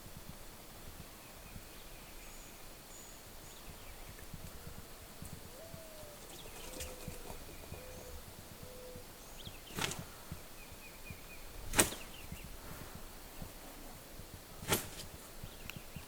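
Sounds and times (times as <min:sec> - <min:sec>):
faint bird chirps: 0:01.2 - 0:12.6.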